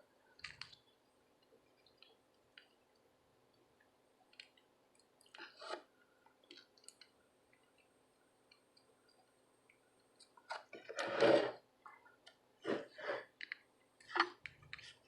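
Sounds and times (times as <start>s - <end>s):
desoldering clicks and crackles: 0.2s - 11.0s.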